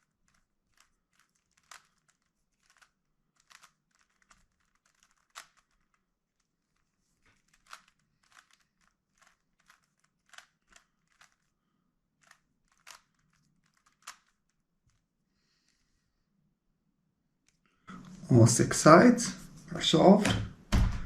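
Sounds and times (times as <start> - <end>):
plastic puzzle cube clicking: 0.0 - 11.5, 12.2 - 15.0.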